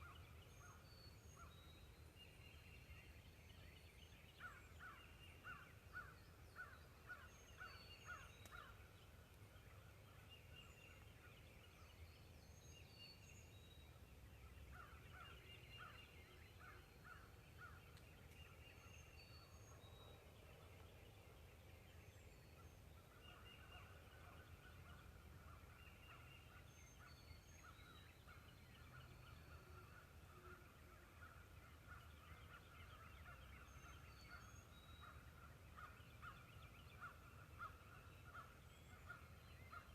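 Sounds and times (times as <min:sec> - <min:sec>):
small birds chirping: 0:04.3 - 0:30.3.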